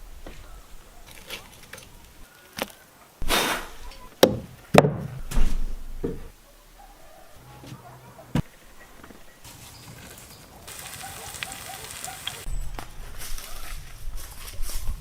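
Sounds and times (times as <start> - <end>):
wood chopping knocks: 4.2 - 5.2.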